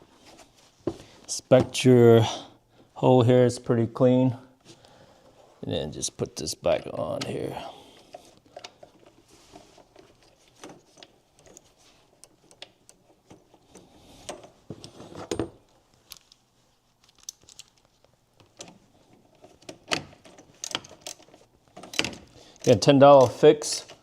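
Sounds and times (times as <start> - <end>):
plastic and metal parts clicking: 19.4 - 24.0.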